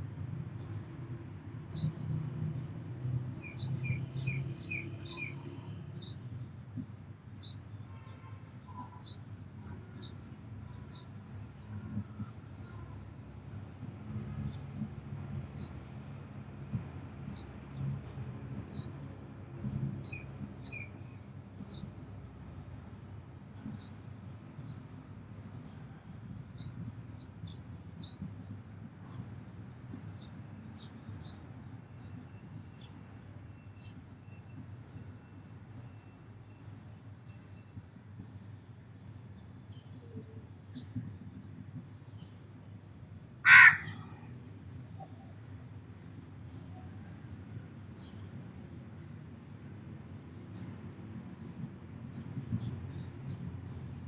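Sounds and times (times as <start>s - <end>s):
sparrows chirping: 1.6s - 54.0s
crow cawing: 43.4s - 44.2s.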